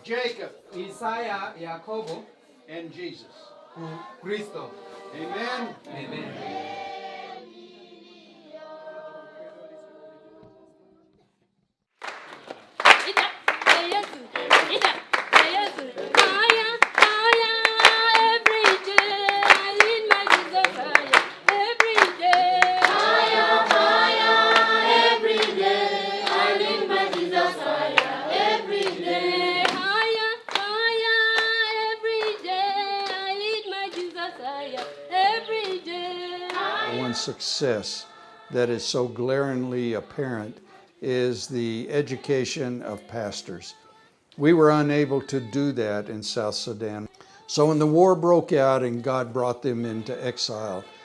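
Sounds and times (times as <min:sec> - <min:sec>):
choir singing in harmony: 0:02.9 - 0:11.2, 0:14.0 - 0:43.9
sharp hand claps: 0:12.0 - 0:35.9, 0:36.5 - 0:36.8.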